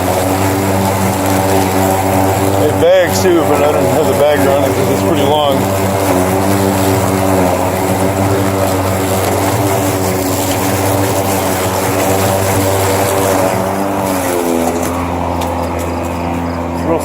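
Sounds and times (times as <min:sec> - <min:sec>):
electric lawn mower humming: 0:00.0 - 0:17.0.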